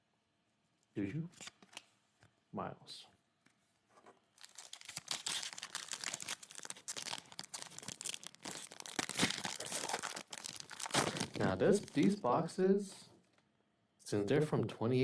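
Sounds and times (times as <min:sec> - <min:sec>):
foil wrapper tearing and crinkling: 0:04.4 - 0:12.2.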